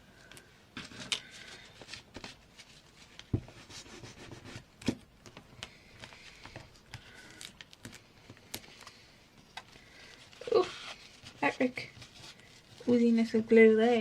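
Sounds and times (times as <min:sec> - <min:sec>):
paper rustling: 0:09.6 - 0:13.2.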